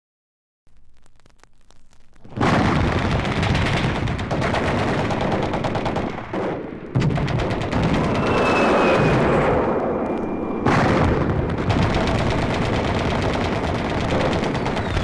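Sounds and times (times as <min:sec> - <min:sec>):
rapid machine-gun fire: 0:02.3 - 0:09.6, 0:10.6 - 0:15.0
scattered gunshots: 0:02.3 - 0:15.0
thin high whistle: 0:08.1 - 0:10.9.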